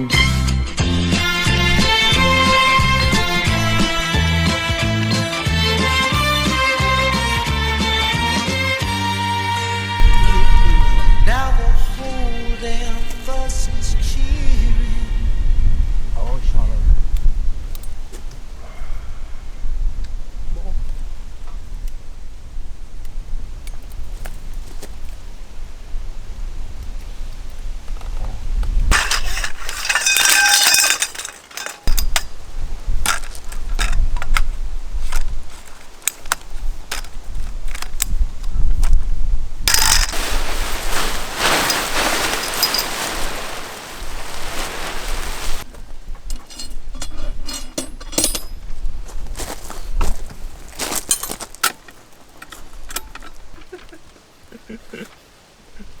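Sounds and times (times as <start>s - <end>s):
metal gear clinking: 28.9s - 32.4s, 39.7s - 40.2s, 42.1s - 43.2s, 46.3s - 48.7s, 50.9s - 53.4s
metallic clatter: 28.9s - 32.4s, 39.7s - 43.7s, 46.2s - 48.7s
loud rustling hiss: 39.6s - 45.7s.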